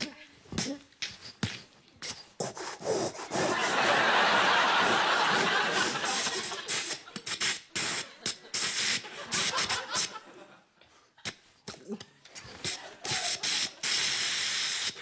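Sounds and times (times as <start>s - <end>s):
long loud mouth hiss: 2.4s - 3.6s, 12.7s - 15.0s
audience laughter: 3.3s - 7.2s, 8.0s - 10.7s
mouth-made noisy bursts: 12.6s - 15.0s.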